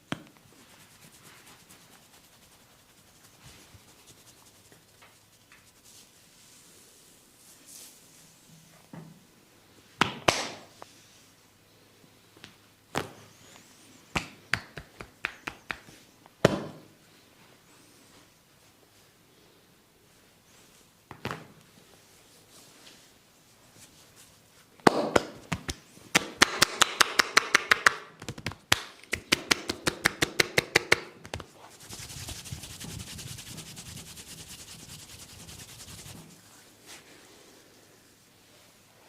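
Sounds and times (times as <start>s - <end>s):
rubbing and scratching: 0.5s - 6.6s, 30.6s - 37.1s
sharp slaps or taps: 10.0s - 10.7s, 14.1s - 16.8s, 24.8s - 31.5s.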